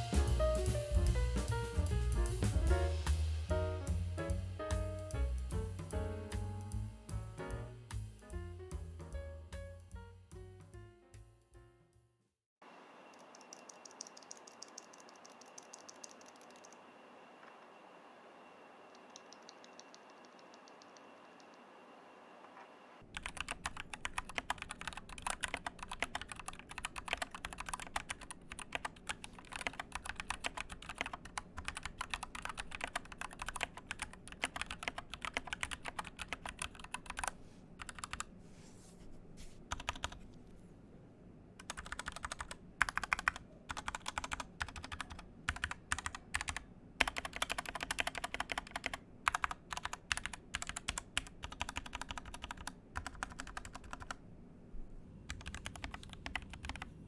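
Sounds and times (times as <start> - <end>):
mechanical keyboard typing: 13.2 - 16.8, 18.9 - 21.1, 23.1 - 38.3, 39.7 - 40.2, 41.6 - 54.2, 55.3 - 56.9.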